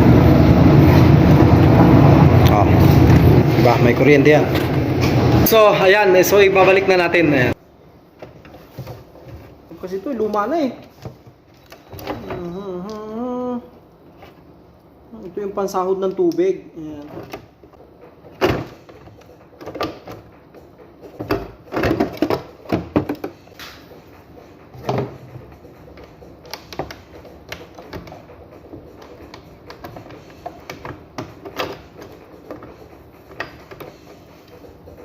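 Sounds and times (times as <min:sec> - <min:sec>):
washing machine parts knocking and rattling: 0:17.1 - 0:23.6, 0:24.7 - 0:35.0.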